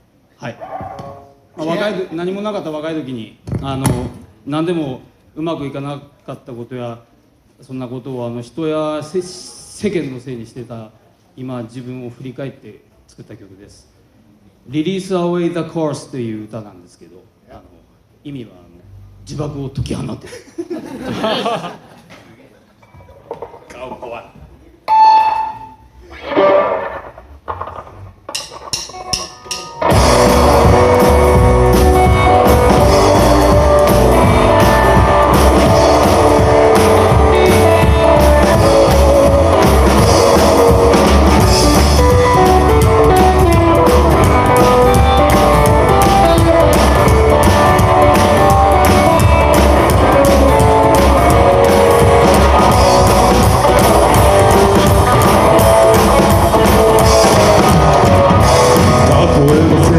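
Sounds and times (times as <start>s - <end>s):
rockabilly band playing live: 24.9s - 59.9s.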